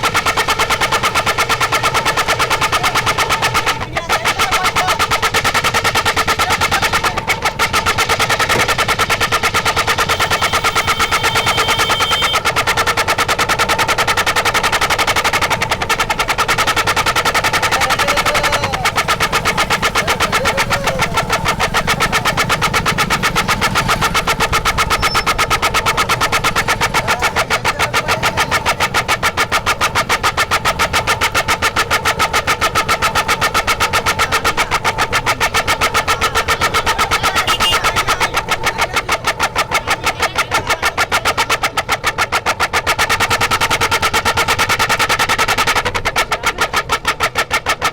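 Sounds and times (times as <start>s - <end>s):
motorcycle exhaust pulses: 0.0s - 47.9s
steady horn tones: 10.0s - 12.4s.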